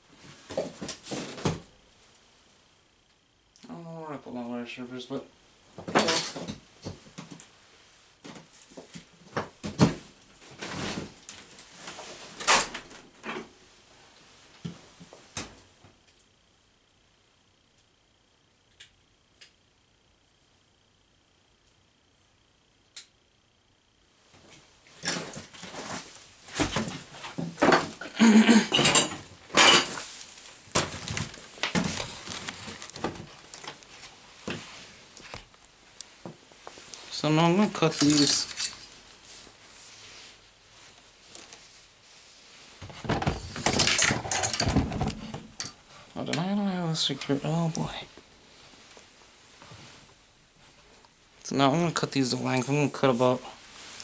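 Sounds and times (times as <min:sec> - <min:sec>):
rummaging through tools: 0:25.0 - 0:33.9, 0:37.6 - 0:39.0, 0:42.8 - 0:45.8.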